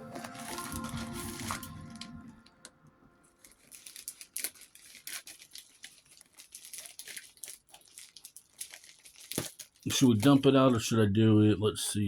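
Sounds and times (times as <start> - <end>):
packaging crinkling and rustling: 0.0 - 2.6, 3.2 - 10.9
background music: 0.0 - 3.7.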